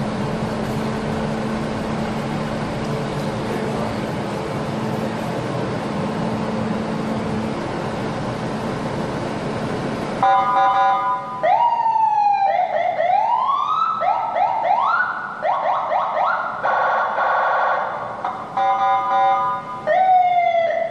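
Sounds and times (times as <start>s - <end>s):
noisy hum: 0.0s - 11.6s
electronic siren cycling tones: 10.2s - 16.4s, 18.3s - 20.8s.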